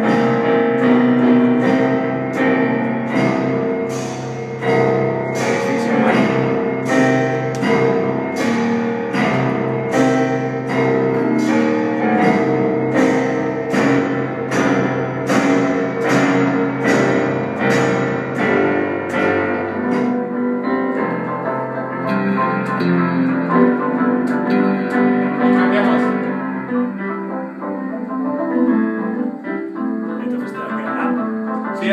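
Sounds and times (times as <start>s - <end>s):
improvised piano music: 0.0s - 31.9s.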